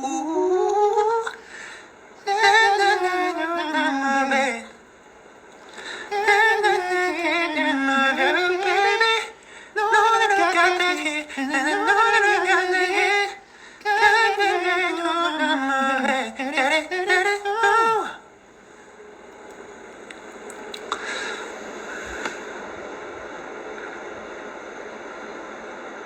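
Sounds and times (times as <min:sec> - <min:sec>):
man singing solo: 0:02.2 - 0:04.8, 0:05.9 - 0:18.3.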